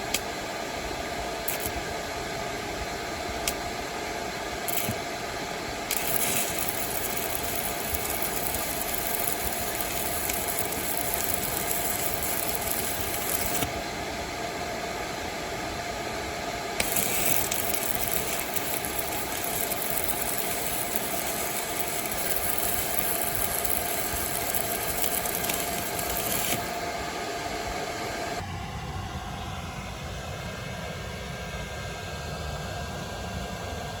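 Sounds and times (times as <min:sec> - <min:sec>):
cooling fan hum: 0:00.0 - 0:34.0
welding arc crackling: 0:01.4 - 0:01.8, 0:04.6 - 0:05.0, 0:05.7 - 0:13.8, 0:16.7 - 0:27.2.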